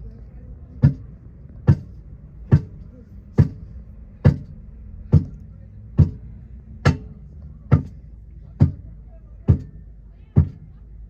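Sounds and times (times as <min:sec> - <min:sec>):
hammer striking tyre rim: 0:00.8 - 0:02.8, 0:03.4 - 0:05.4, 0:06.0 - 0:08.0, 0:08.6 - 0:08.9.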